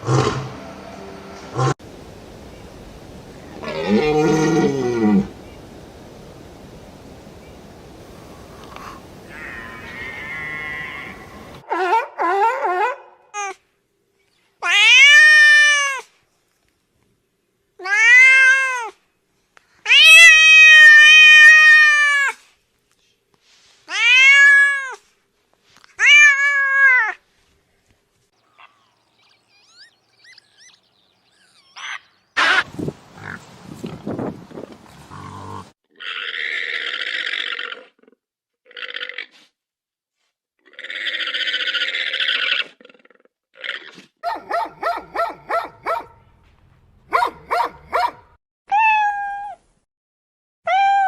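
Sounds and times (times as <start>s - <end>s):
cat meowing loudly: 9.3s - 11.6s, 14.6s - 16.0s, 19.9s - 22.4s, 23.9s - 25.0s, 26.0s - 27.2s, 48.7s - 49.6s, 50.7s - 51.0s
buzzy rasping call: 29.5s - 30.8s.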